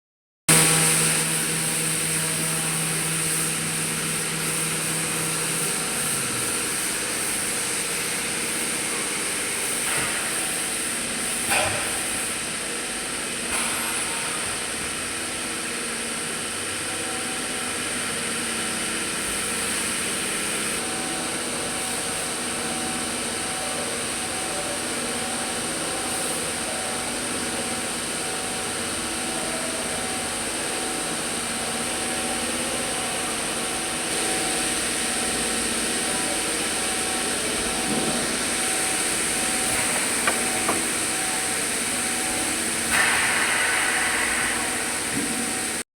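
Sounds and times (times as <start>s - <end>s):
workshop machinery humming: 0.5s - 45.8s.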